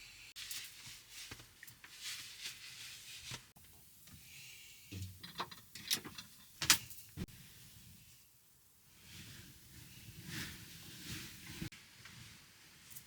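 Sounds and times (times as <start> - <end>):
objects clicking and knocking: 4.9 - 7.0.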